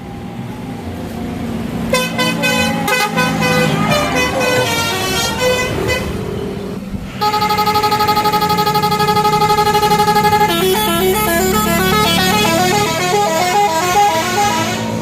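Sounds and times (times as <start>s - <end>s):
tourist train running: 0.0s - 15.0s
pulsing horn chord: 7.2s - 14.9s
multi-tone horn playing a tune: 7.2s - 15.0s.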